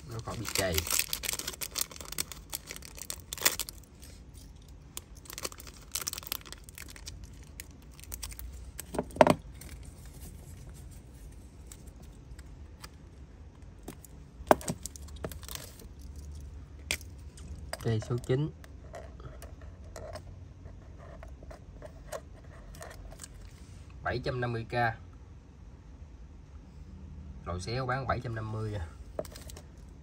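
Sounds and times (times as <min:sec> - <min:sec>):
plastic wrapping rustling: 0:00.0 - 0:13.0, 0:13.8 - 0:16.4.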